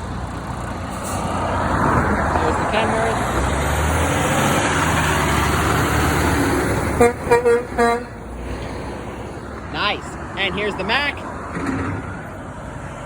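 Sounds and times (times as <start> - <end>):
truck engine and tyre noise: 0.0 - 13.0
truck horn toots: 6.9 - 8.2.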